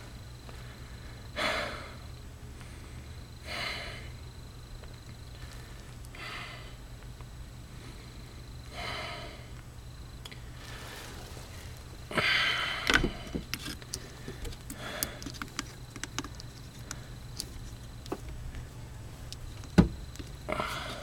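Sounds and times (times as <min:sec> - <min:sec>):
rustling scrape: 0:10.5 - 0:12.1
small clicks and taps: 0:12.9 - 0:18.6.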